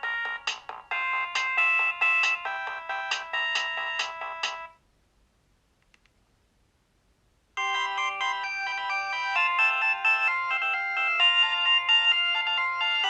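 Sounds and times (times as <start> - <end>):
polyphonic phone ringtone: 0.0 - 4.8, 7.6 - 13.0.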